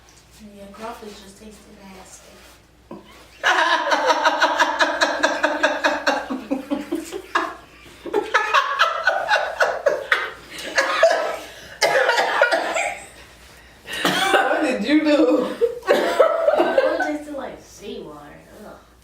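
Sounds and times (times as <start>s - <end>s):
person laughing: 3.4s - 13.0s
person coughing: 10.7s - 13.1s, 13.9s - 14.6s, 15.9s - 16.3s.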